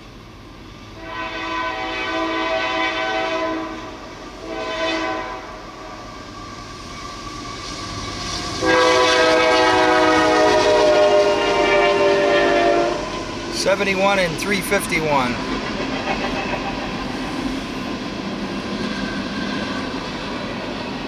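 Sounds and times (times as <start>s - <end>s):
train air horn blasts: 1.0s - 5.7s, 8.6s - 13.4s
train rumble: 5.7s - 21.0s.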